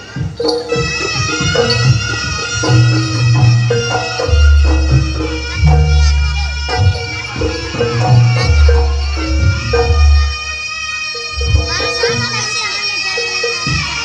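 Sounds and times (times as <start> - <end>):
drum strokes: 0.0 - 14.0
shrill reed horn melody: 0.4 - 14.0
deep held bass notes: 1.6 - 10.6, 11.4 - 12.4.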